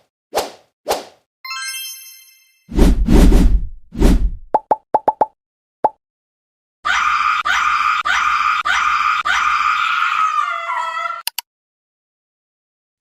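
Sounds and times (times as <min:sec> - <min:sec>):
pulsing screaming cry effect: 0:06.8 - 0:11.2.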